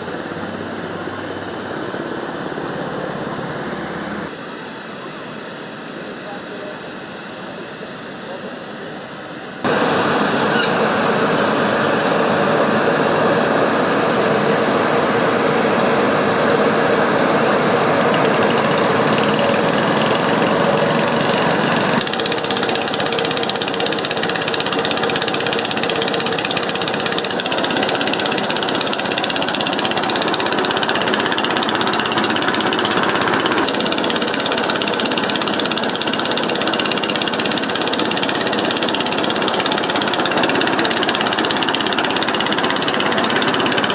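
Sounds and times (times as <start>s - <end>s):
jet engine roar: 9.7s - 22.0s.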